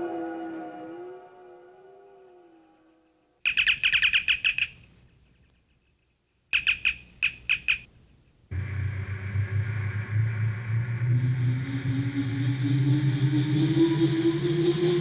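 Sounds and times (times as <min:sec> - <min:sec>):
low electronic hum: 0:08.5 - 0:15.0.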